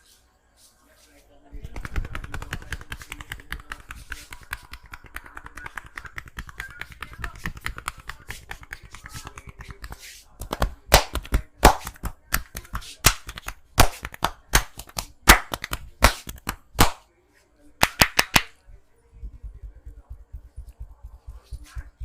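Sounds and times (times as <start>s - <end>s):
cupped hands clapping on body: 1.6s - 17.0s, 17.8s - 18.6s.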